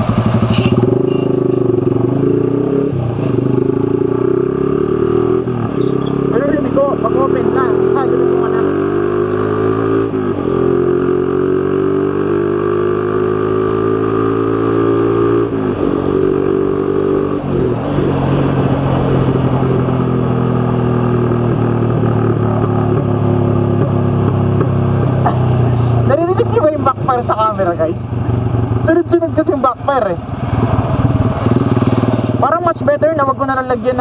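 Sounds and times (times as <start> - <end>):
motorcycle accelerating hard: 0.0 - 34.0.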